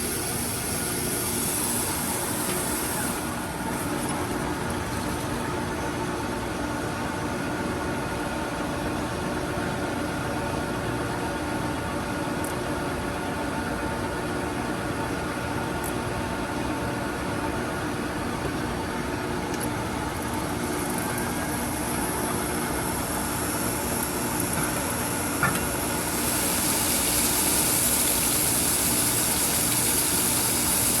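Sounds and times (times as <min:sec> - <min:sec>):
bright hiss: 0:00.0 - 0:03.8, 0:25.3 - 0:31.0
grinding machine humming: 0:00.0 - 0:06.0, 0:19.4 - 0:31.0.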